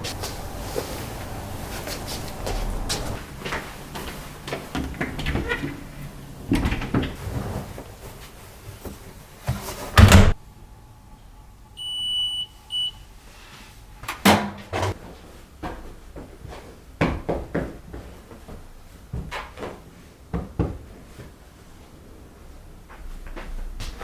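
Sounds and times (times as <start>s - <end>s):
electronic appliance beeping: 11.7s - 13.2s.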